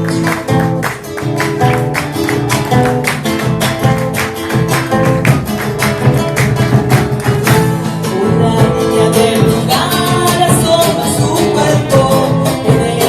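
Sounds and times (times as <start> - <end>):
strummed guitars: 0.0 - 13.0
person singing: 7.8 - 13.0.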